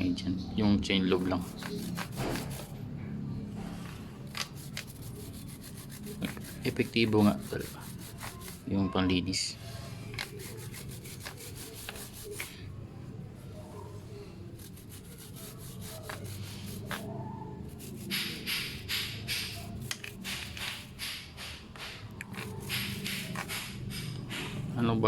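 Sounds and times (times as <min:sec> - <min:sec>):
brush scrubbing a chain: 0:01.1 - 0:02.8, 0:03.6 - 0:08.7, 0:09.6 - 0:12.7, 0:13.5 - 0:25.0.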